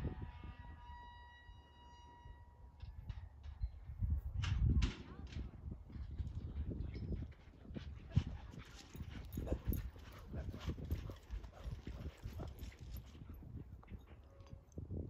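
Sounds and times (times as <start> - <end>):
horse hoofbeats: 5.9 - 14.7.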